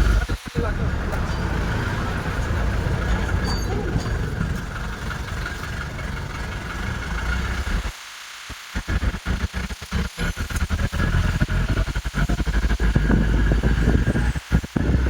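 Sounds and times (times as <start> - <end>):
road noise: 0.0 - 8.0
vehicle engine rumble: 0.0 - 8.0, 10.1 - 15.0.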